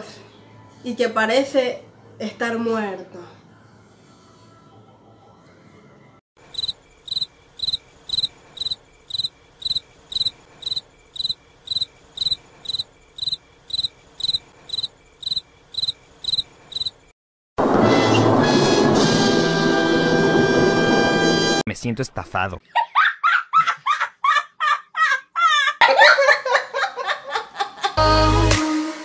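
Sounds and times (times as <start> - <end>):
cricket chirping: 6.4 - 17.1
loud music: 28.0 - 29.0.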